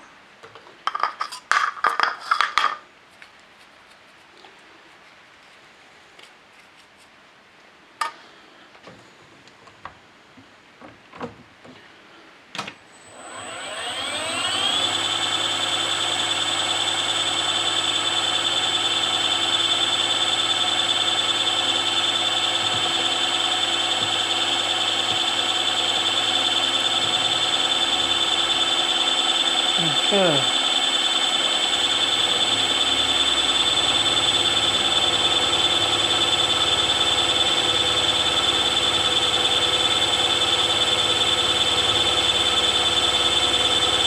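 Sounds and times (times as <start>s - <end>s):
spindle motor whine: 12.9s - 44.0s.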